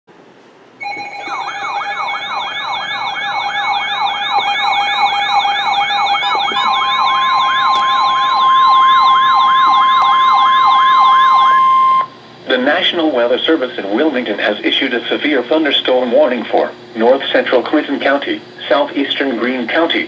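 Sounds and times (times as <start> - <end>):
steady alert tone: 0.8 - 12.1
electronic sirens yelping: 0.8 - 12.2.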